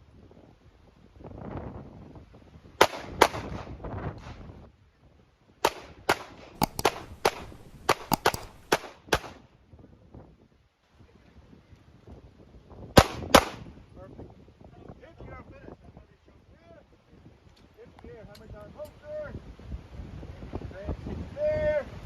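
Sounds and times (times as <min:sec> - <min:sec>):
handgun shots: 0:05.7 - 0:09.2.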